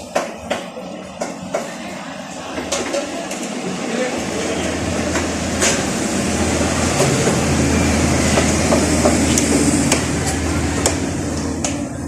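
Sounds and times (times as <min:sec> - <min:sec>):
engine humming steadily: 0:03.2 - 0:12.0.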